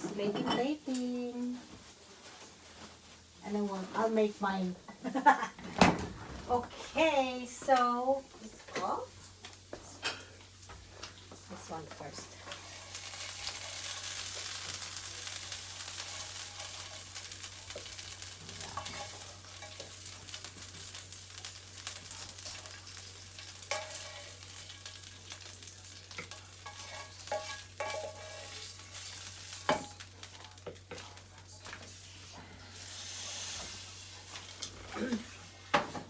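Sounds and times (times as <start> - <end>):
food sizzling in a frying pan: 0.0 - 36.0
spatula scraping and clinking pan: 18.5 - 20.0, 23.6 - 25.0, 26.1 - 30.0.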